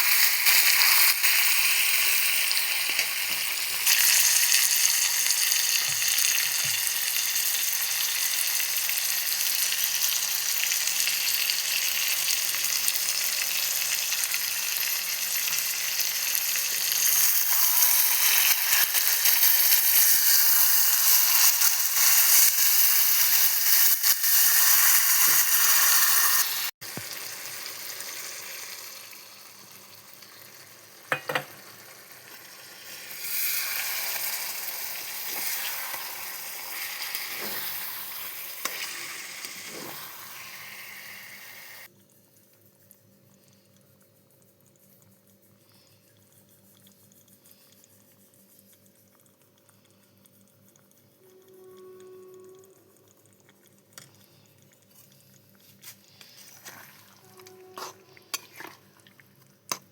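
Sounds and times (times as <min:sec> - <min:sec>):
chicken sizzling in a pan: 0:00.0 - 0:41.9.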